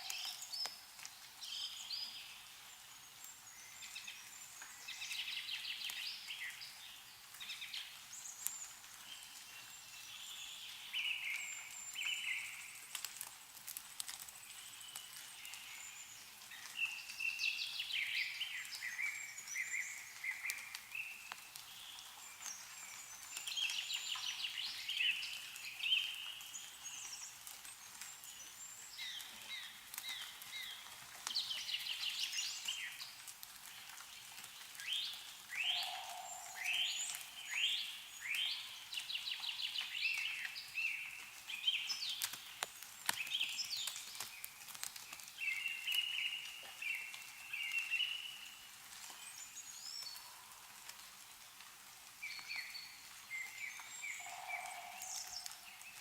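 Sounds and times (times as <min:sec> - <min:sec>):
melting snow dripping: 0:00.0 - 0:56.0
songbirds singing: 0:00.0 - 0:56.0.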